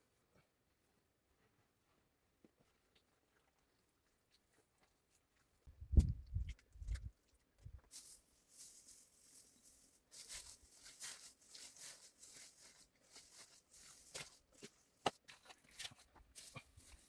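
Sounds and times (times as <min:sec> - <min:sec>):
rustling and crackling: 0:04.4 - 0:17.0.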